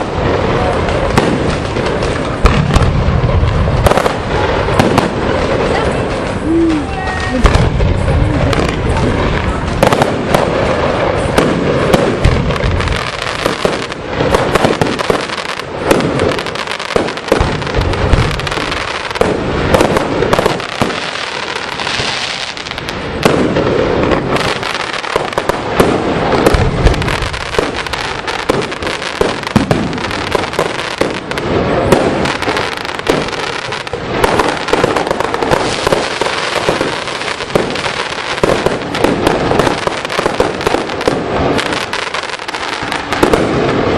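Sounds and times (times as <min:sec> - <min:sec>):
firework bangs: 0:00.0 - 0:43.9
firework crackling: 0:00.0 - 0:43.9.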